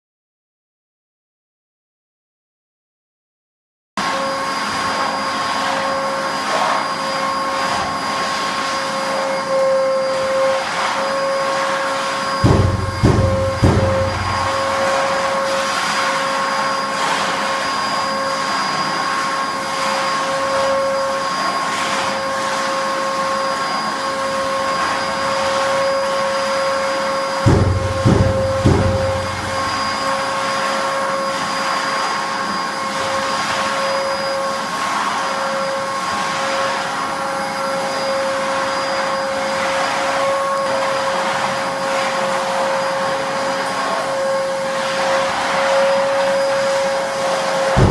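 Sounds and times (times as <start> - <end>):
vacuum cleaner running: 4.0 - 47.9
low thumps: 12.4 - 14.8, 27.5 - 29.8.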